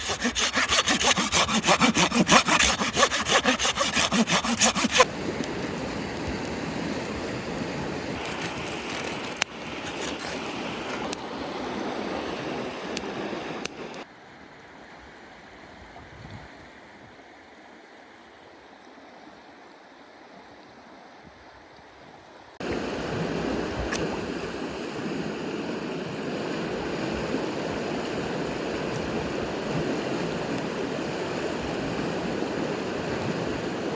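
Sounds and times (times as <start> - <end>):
wood being sawn: 0.0 - 5.1, 9.8 - 10.4
mountain stream murmur: 22.6 - 33.9.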